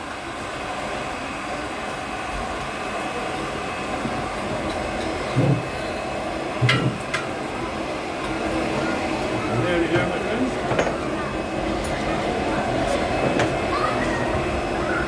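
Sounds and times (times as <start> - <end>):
forge fire roaring: 0.0 - 15.0.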